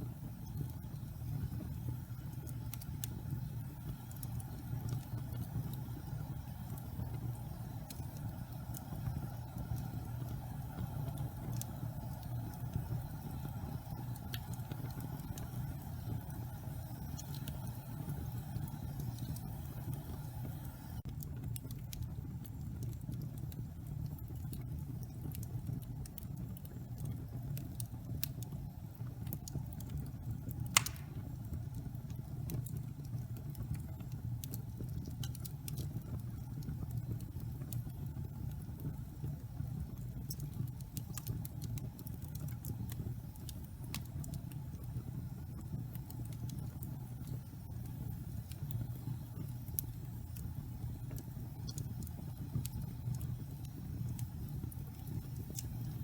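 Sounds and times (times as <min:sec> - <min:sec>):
wood fire roaring and crackling: 0:00.0 - 0:56.0
loud fire pop: 0:30.7 - 0:31.3.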